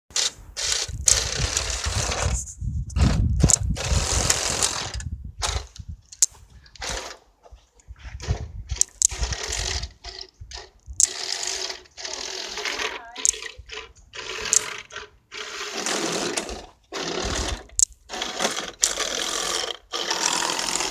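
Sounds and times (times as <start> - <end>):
toy electric motors and tracks: 0.1 - 20.9
mechanical rattle: 8.2 - 20.9.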